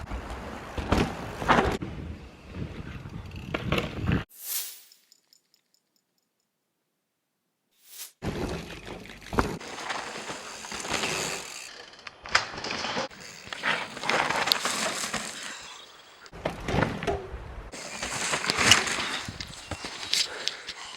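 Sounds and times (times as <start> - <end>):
wind: 0.0 - 6.3, 8.2 - 20.9
bike clicking and rattling: 2.6 - 4.2, 8.3 - 15.8, 17.7 - 20.9
bike tyres rolling on trail: 8.3 - 16.7, 17.7 - 20.9.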